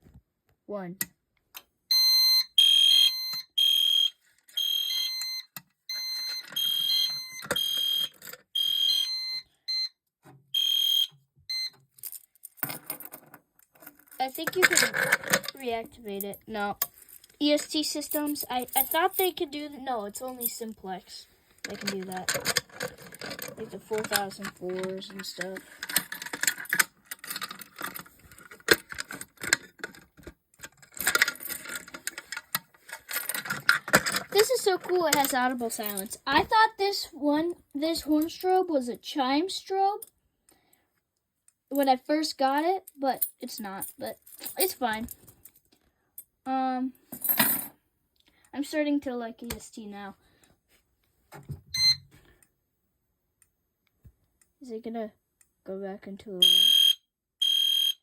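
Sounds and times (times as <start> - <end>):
fire alarm horn blasts: 1.9 - 9.9, 10.6 - 11.7, 56.4 - 58.0
clicks and rattles of equipment: 11.6 - 17.4, 21.6 - 36.5.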